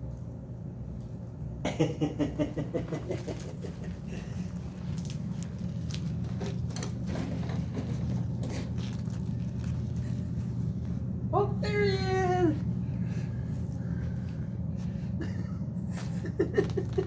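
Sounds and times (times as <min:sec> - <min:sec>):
parrot scuffling and rustling: 0:03.0 - 0:11.2.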